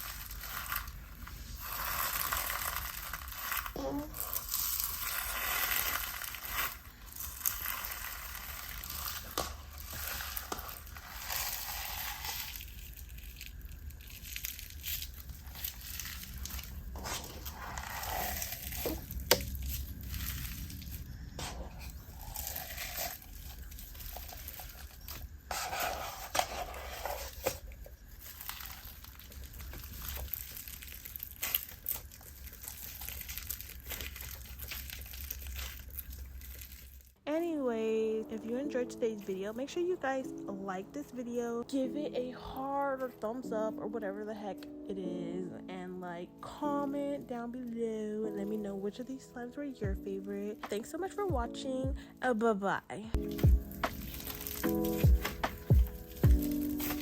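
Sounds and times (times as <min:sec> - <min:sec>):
hands squishing crunchy slime: 0:00.0 - 0:37.1, 0:53.2 - 0:57.0.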